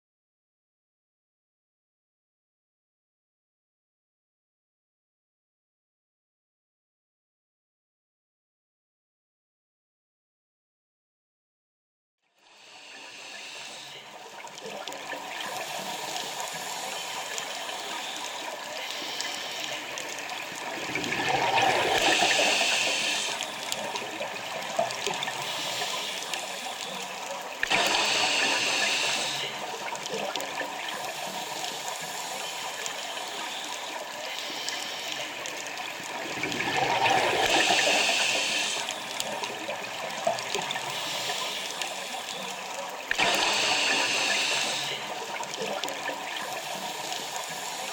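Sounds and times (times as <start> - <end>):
underwater water hiss: 12.5 - 14.2, 15.3 - 30.0, 30.8 - 42.5, 43.1 - 45.6, 46.3 - 47.9
hissing regulator inhalations: 12.6 - 14.1, 15.5 - 24.1, 24.8 - 27.0, 27.7 - 29.7, 31.1 - 35.6, 36.8 - 39.6, 40.7 - 42.5, 43.2 - 45.2.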